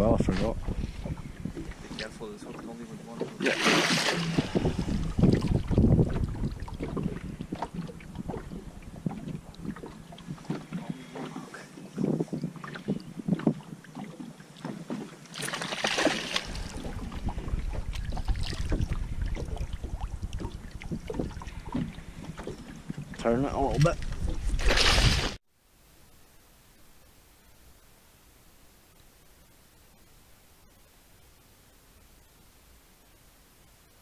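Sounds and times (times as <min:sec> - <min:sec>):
wind rumble on microphone: 0:00.0 - 0:03.1, 0:04.1 - 0:14.9, 0:16.4 - 0:25.4.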